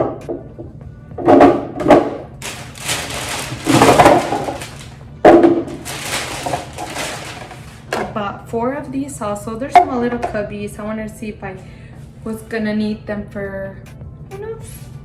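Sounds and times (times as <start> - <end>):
plastic containers clunking: 1.2 - 8.2
plastic containers rattling: 1.2 - 8.2.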